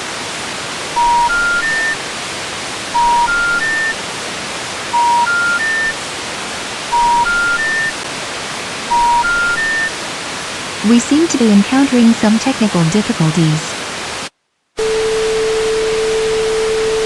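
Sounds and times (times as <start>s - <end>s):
static hiss: 0.0s - 17.0s
three-note electronic beep: 1.0s - 2.0s, 3.0s - 3.9s, 5.0s - 5.9s, 7.0s - 7.9s, 8.9s - 9.9s.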